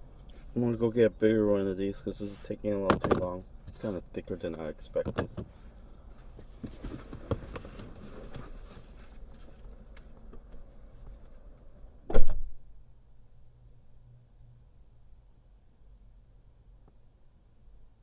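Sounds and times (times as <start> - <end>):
rustling and handling clatter: 2.2 - 11.4
car door shutting: 12.1 - 12.6.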